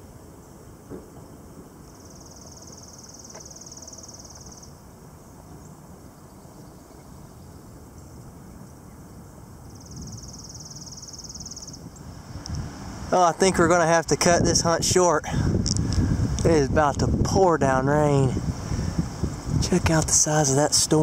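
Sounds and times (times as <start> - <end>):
insect high-pitched trill: 0.0 - 14.2
outdoor background noise: 0.0 - 21.0.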